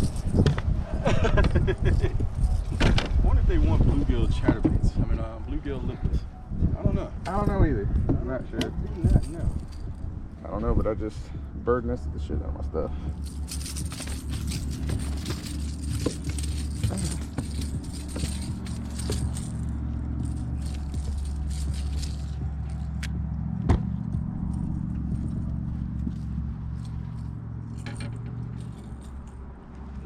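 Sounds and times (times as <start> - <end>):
fishing tackle clicks and rattles: 13.2 - 23.2, 26.0 - 29.4.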